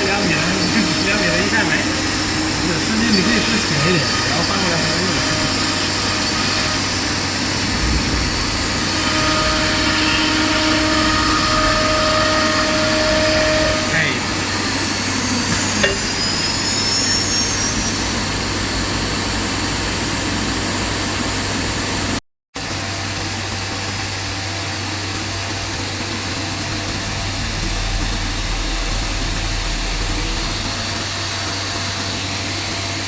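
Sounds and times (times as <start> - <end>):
high gliding tones: 0.0 - 18.0, 26.1 - 32.0
router machine drone and whine: 0.0 - 33.0.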